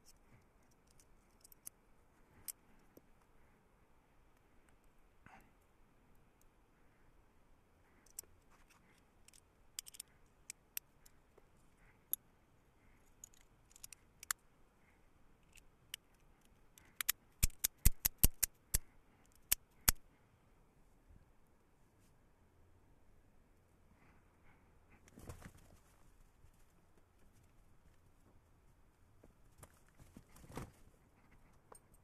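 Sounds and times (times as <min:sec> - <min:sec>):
knife metallic clicks and snaps: 0:16.9 - 0:18.8.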